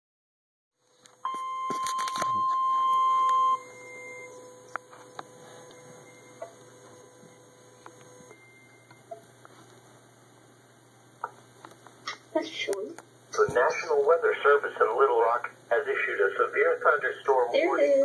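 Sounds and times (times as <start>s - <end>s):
faint radio hiss: 0.8s - 18.0s
weather radio alert beep: 1.3s - 7.4s.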